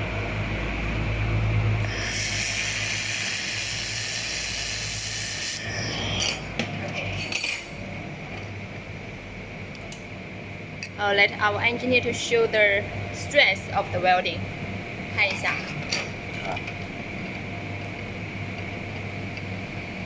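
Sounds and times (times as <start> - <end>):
low machine hum: 0.0 - 20.0
laser welder hissing: 1.8 - 6.2.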